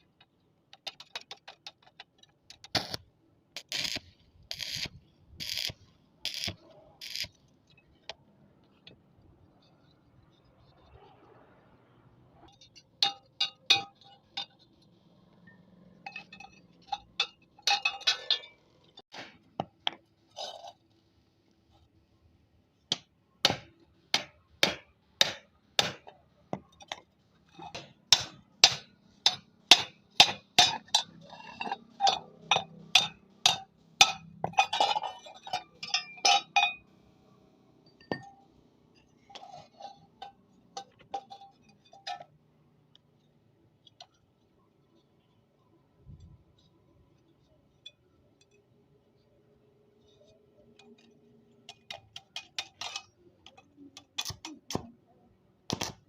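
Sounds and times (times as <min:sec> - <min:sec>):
hammer striking iron: 0:22.9 - 0:26.7, 0:27.7 - 0:31.1, 0:32.1 - 0:34.6.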